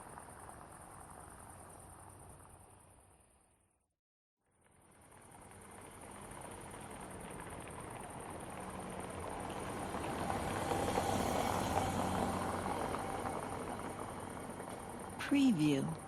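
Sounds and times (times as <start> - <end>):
crickets chirping: 0.0 - 3.6
car passing on paved road: 4.7 - 15.2.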